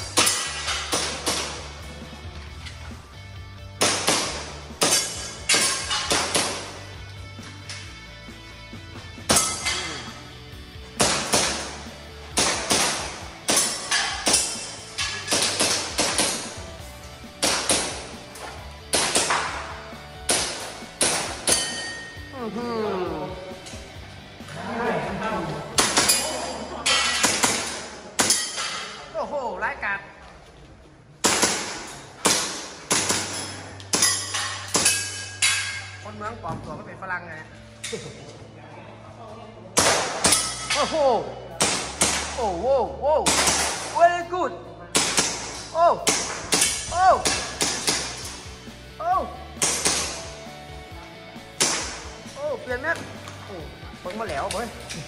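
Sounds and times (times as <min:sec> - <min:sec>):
background music: 0:00.0 - 0:55.0
airsoft pistol shots: 0:03.8 - 0:06.7, 0:11.0 - 0:11.8, 0:12.4 - 0:14.5, 0:17.4 - 0:18.1, 0:18.9 - 0:19.6, 0:31.2 - 0:33.4, 0:43.3 - 0:44.0, 0:45.0 - 0:48.3, 0:49.6 - 0:50.2, 0:51.6 - 0:52.1.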